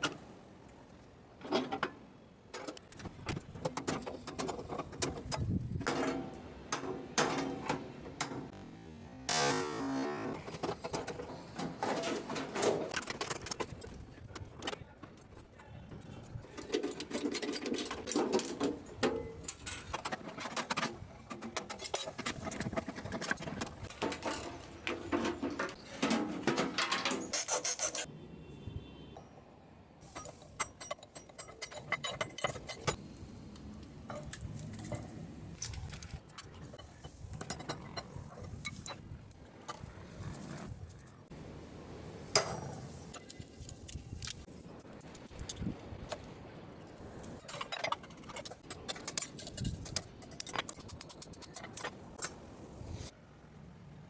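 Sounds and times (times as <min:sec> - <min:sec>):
metal parts clinking and rattling: 0:16.2 - 0:28.1, 0:30.0 - 0:33.0, 0:34.0 - 0:40.3, 0:42.4 - 0:52.4.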